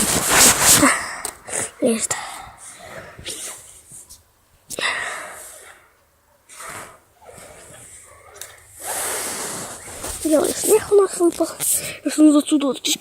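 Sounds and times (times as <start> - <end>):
person breathing hard: 0.7 - 4.1, 4.7 - 10.1.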